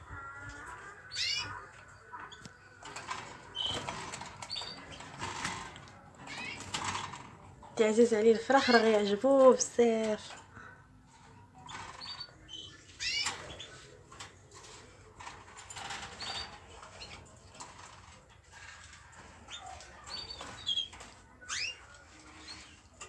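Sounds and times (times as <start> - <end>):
small birds chirping: 0.0 - 23.0
rustling and clicks in cage: 0.2 - 23.0.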